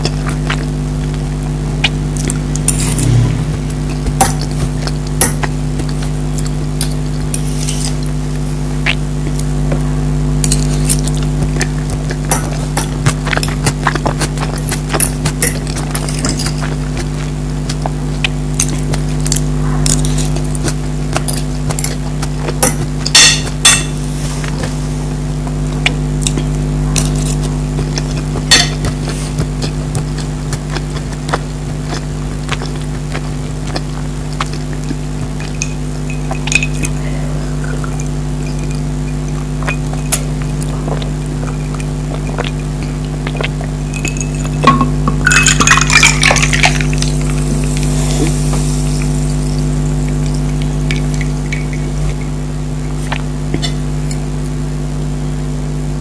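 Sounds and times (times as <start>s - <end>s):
steady low hum: 0.0s - 56.0s
utensil clinking on plate: 22.6s - 24.0s, 28.5s - 29.0s.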